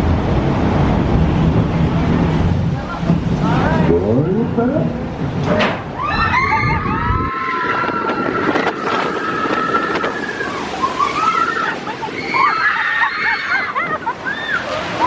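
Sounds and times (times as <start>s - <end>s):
rush of wind and water: 0.0s - 15.0s
riders screaming: 6.0s - 15.0s.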